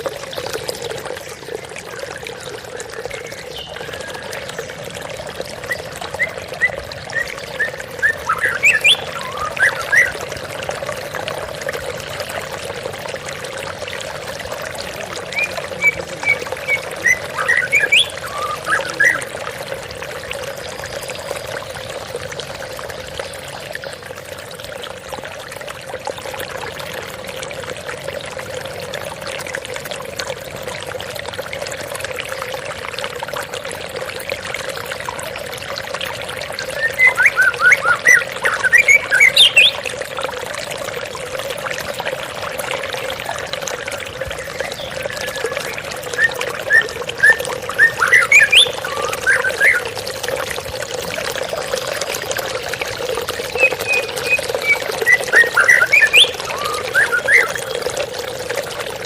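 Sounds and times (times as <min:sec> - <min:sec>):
water splashing and trickling: 0:00.0 - 0:59.0
songbird chirping and whistling: 0:07.1 - 0:10.2, 0:15.3 - 0:19.3, 0:36.8 - 0:39.8, 0:46.2 - 0:49.8, 0:53.6 - 0:57.6.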